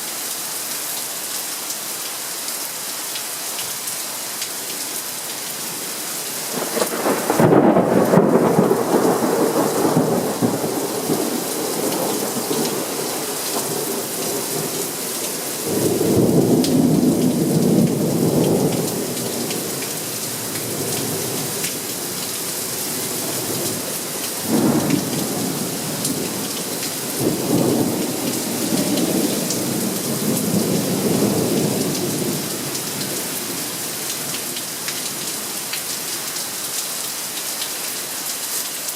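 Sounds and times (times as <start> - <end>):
steady rain: 0.0 - 38.9
thunder rumbling: 6.5 - 15.0, 24.4 - 32.6.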